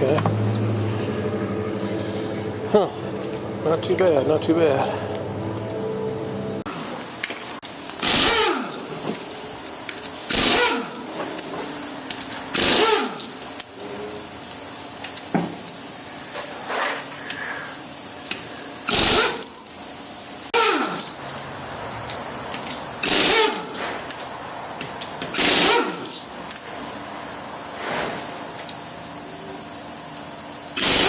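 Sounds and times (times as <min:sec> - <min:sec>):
tool whine winding down: 0:00.0 - 0:15.1, 0:17.2 - 0:19.8, 0:23.0 - 0:23.8
pneumatic impact wrench bursts: 0:07.2 - 0:27.0, 0:27.7 - 0:31.0.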